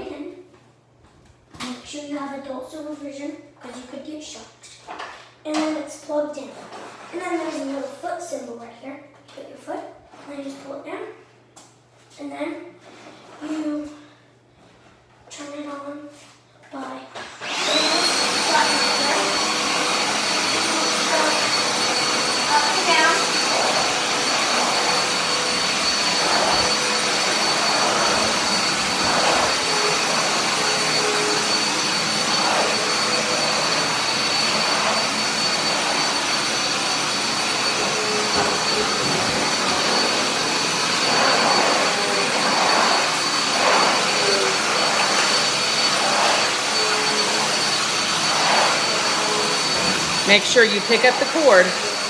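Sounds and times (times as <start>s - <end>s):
vacuum cleaner whining: 17.2s - 52.0s.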